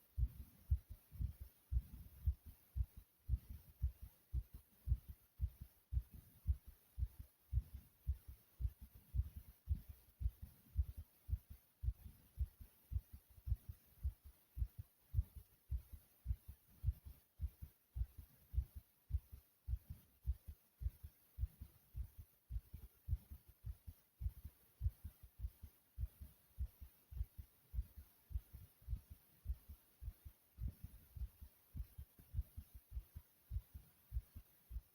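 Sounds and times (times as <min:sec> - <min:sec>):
heartbeat thuds: 0:00.1 - 0:34.9.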